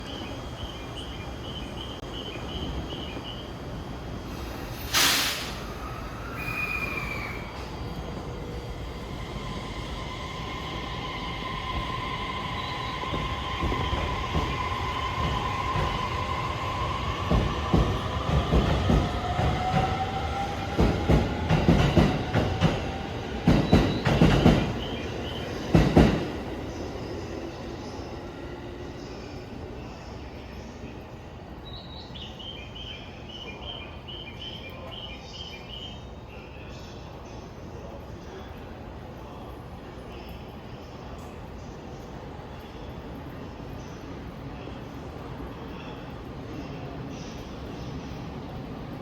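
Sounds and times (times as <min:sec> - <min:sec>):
air hiss: 0:04.3 - 0:07.4.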